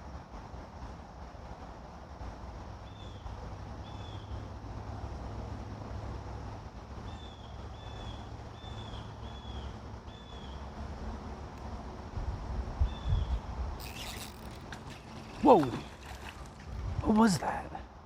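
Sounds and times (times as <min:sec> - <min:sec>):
wind rumble on microphone: 0:11.9 - 0:17.2
creek water flowing: 0:13.8 - 0:18.0.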